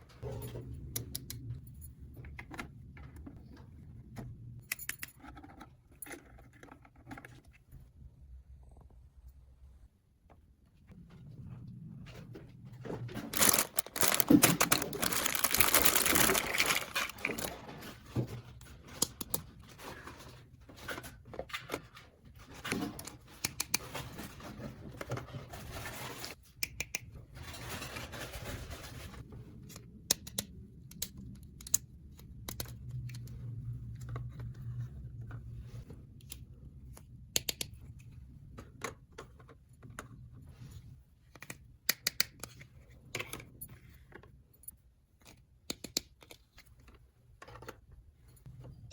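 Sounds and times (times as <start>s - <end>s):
packaging rustling: 13.1s - 17.8s.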